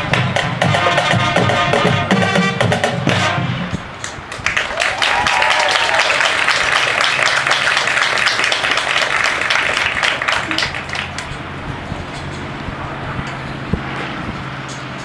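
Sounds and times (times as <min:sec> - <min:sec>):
crowd applauding: 0:04.3 - 0:11.4.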